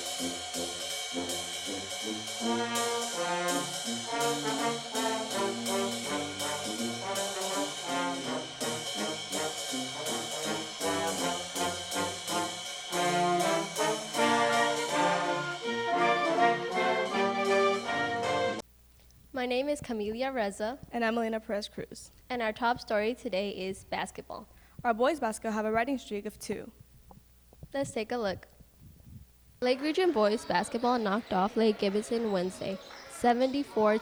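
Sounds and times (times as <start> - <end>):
drum beat: 0.0 - 15.5, 29.6 - 34.0
brass band music: 0.0 - 18.6, 29.7 - 34.0.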